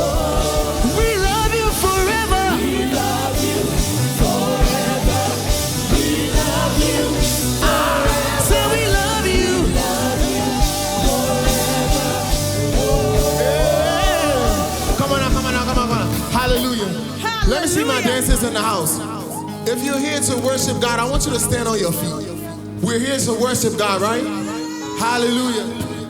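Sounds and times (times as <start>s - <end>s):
person singing: 0.0s - 19.4s
live gospel band music: 0.0s - 26.0s.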